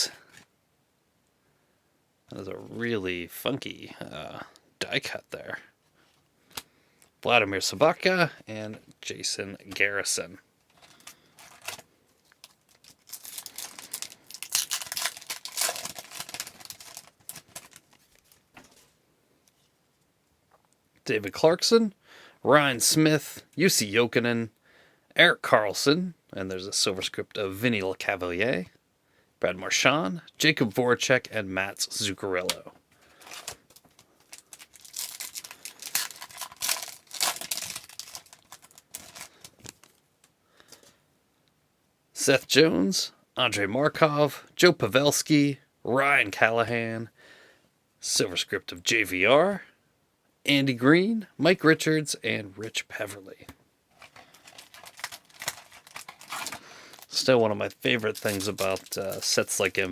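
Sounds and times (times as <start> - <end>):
wrapper crinkling and tearing: 10.7 - 19.0, 33.1 - 40.0, 53.9 - 59.9.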